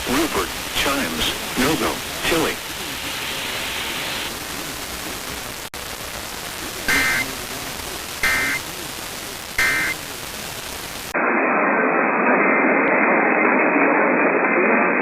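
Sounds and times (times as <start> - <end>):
steady hiss: 0.0 - 11.2
muffled radio static: 0.0 - 15.0
warbling data tones: 6.9 - 7.4, 8.1 - 8.7, 9.5 - 10.1.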